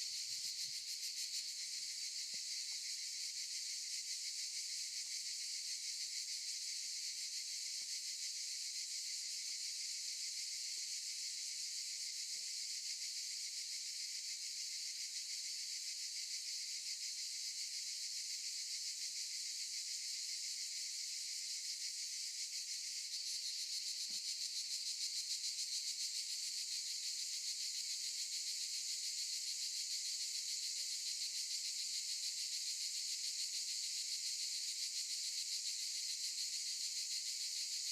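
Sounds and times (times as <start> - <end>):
cicadas buzzing: 22.5 - 30.7, 32.8 - 35.1, 35.7 - 37.8.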